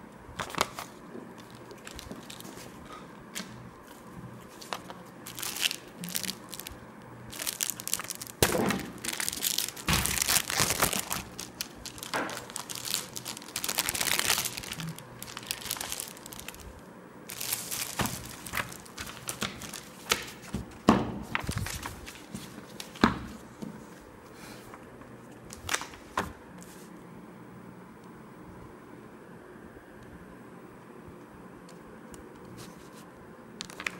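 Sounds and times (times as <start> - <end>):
packing material crinkling: 0.4 - 23.4, 25.4 - 26.4, 33.6 - 33.9.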